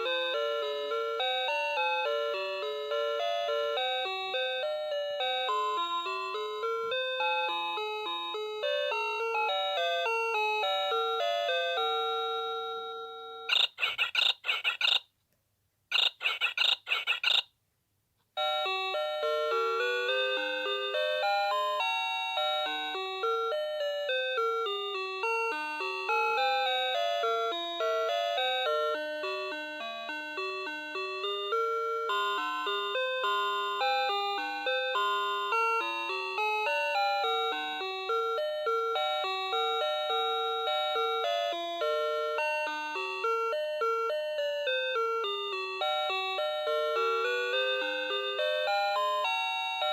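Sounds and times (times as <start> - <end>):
rapid electronic beeps: 13.5 - 15.0, 15.9 - 17.5.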